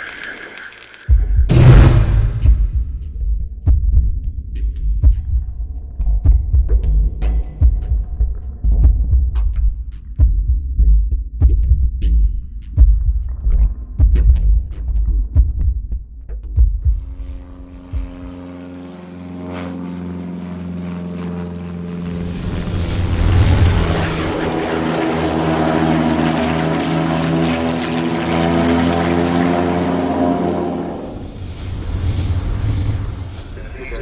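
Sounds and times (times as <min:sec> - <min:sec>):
aircraft engine running: 0:01.5 - 0:03.0, 0:16.9 - 0:34.0.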